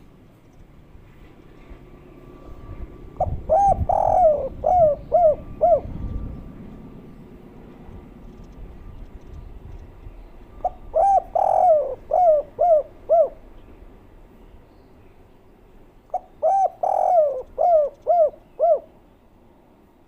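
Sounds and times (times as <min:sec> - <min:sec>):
dove cooing: 0:03.1 - 0:06.5, 0:10.5 - 0:13.5, 0:16.1 - 0:19.0.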